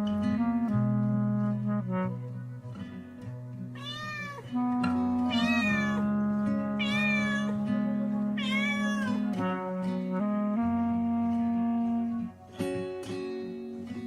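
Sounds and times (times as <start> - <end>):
background music: 0.0 - 14.0
kitten meowing: 3.8 - 4.5, 5.3 - 6.1, 6.8 - 7.6, 8.4 - 9.3.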